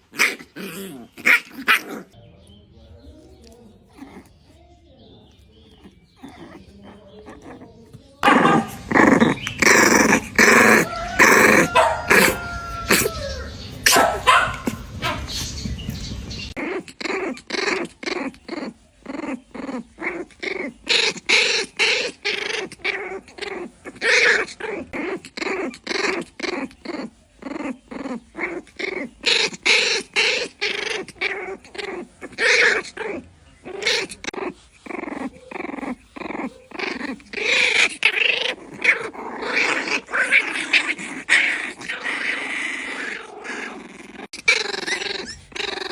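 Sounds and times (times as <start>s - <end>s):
puppy barking: 5.7s - 15.5s.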